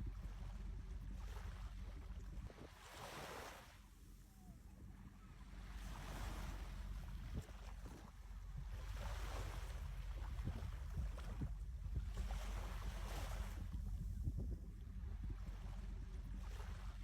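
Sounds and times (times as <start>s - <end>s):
sea waves washing in: 1.1s - 3.9s
wind buffeting microphone: 7.0s - 17.0s.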